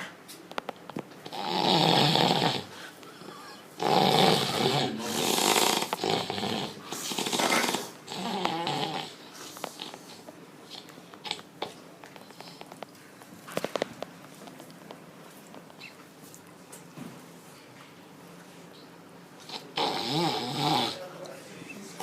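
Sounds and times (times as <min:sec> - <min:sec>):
loud snoring: 0:01.2 - 0:02.7, 0:03.8 - 0:09.2, 0:19.5 - 0:21.0.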